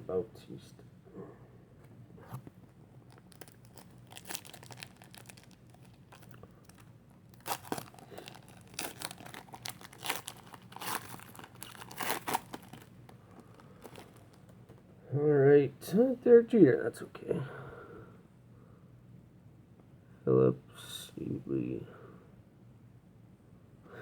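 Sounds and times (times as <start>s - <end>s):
foil wrapper crinkling and tearing: 3.0s - 14.5s.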